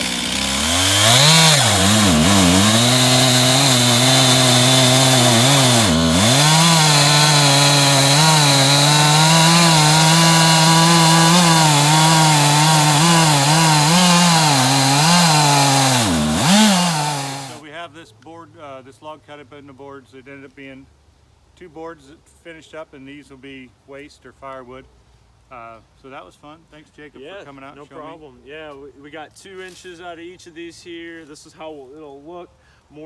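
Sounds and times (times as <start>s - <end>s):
chainsaw cutting log: 0.0s - 17.6s.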